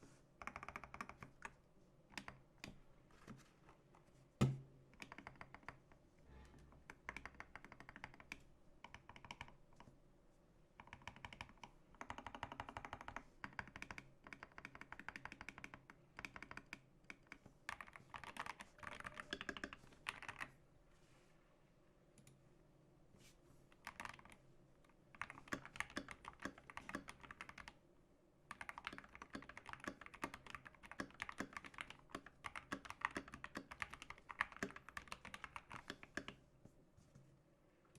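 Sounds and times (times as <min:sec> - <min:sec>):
keyboard typing: 0:00.4 - 0:02.8, 0:05.0 - 0:05.8, 0:06.9 - 0:09.9, 0:10.8 - 0:20.6, 0:23.8 - 0:24.4, 0:25.1 - 0:27.8, 0:28.5 - 0:36.4.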